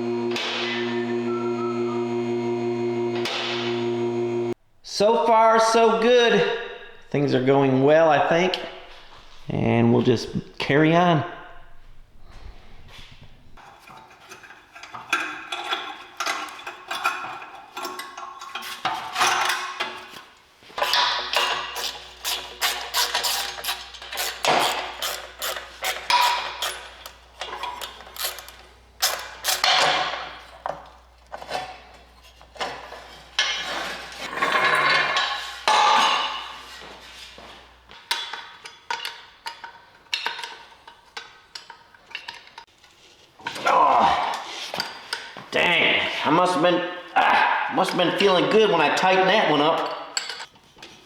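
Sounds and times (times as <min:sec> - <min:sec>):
hand tools clanking on bolts: 0:08.3 - 0:43.7, 0:47.8 - 0:51.0.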